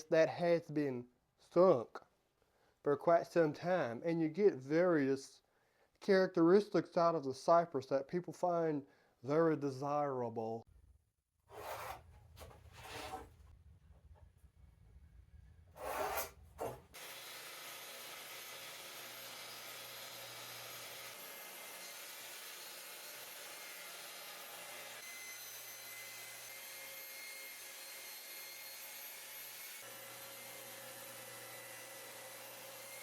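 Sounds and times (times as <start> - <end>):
scraping rubs on wood: 11.5 - 13.4, 15.8 - 16.9.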